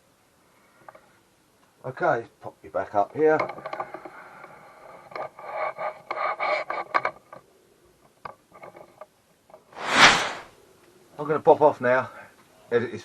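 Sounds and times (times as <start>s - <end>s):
loud rush of noise: 9.8s - 10.5s.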